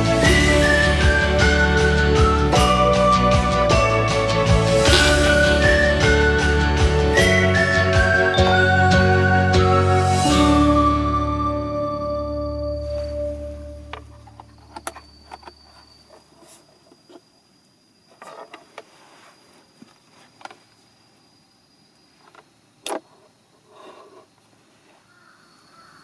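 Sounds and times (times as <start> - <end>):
background music: 0.0 - 14.0
high insect note: 4.8 - 6.8.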